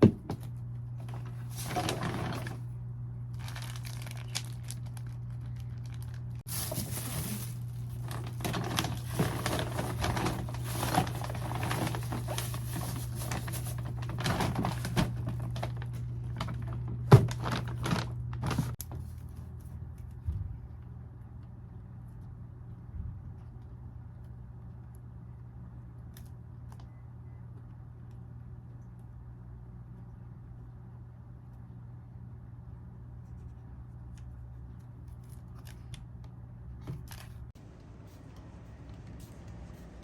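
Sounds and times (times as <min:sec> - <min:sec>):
crinkling and rustling handling: 0:00.0 - 0:25.1, 0:33.1 - 0:40.0
steady low hum: 0:00.0 - 0:40.0.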